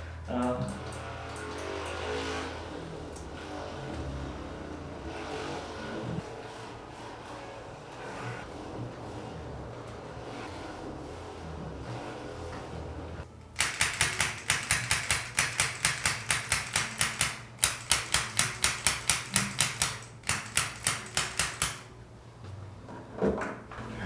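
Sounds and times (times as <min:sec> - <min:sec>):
sharp clicking strikes: 0:13.6 - 0:21.9.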